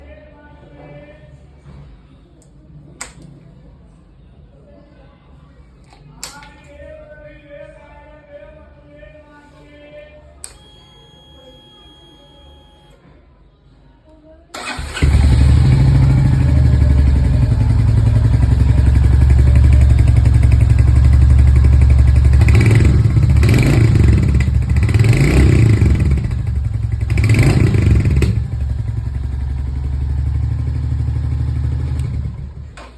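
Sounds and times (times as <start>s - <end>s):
motorcycle engine idling and revving: 14.6s - 32.9s.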